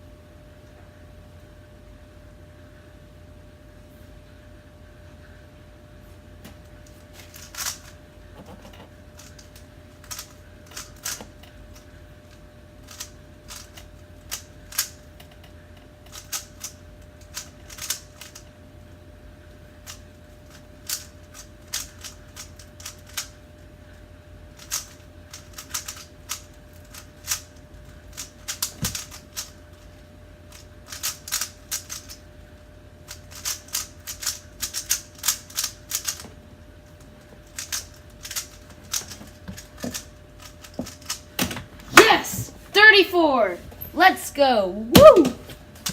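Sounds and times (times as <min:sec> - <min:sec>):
rubik's cube plastic clacking: 0:07.2 - 0:11.9, 0:12.9 - 0:15.0, 0:16.1 - 0:18.4, 0:19.8 - 0:23.3, 0:24.6 - 0:27.5, 0:28.1 - 0:29.5, 0:30.5 - 0:32.2, 0:33.1 - 0:36.2, 0:37.5 - 0:41.2.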